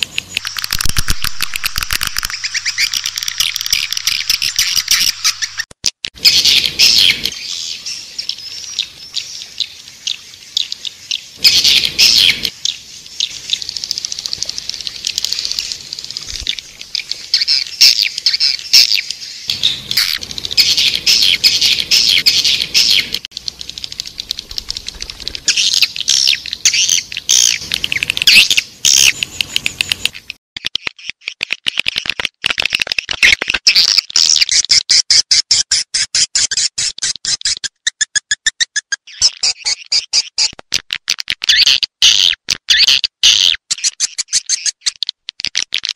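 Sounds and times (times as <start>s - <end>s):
swiftlets twittering and chirping: 0.0s - 31.4s.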